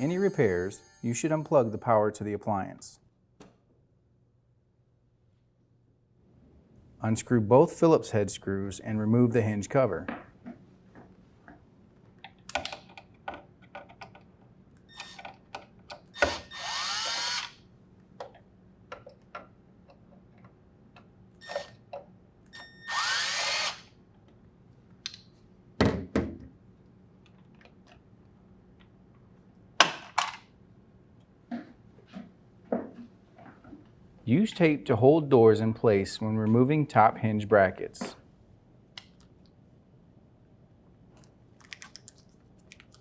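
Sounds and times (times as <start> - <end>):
cordless drill spinning: 16.2 - 17.6, 22.9 - 23.9.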